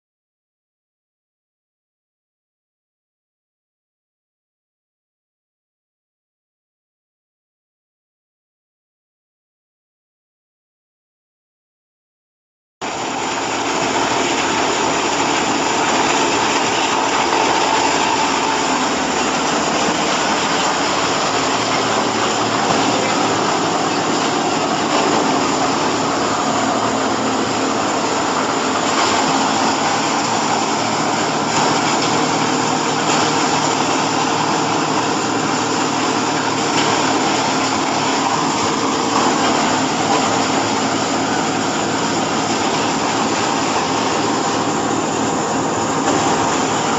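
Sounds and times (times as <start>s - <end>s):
hydraulic baling press running: 12.8s - 46.9s.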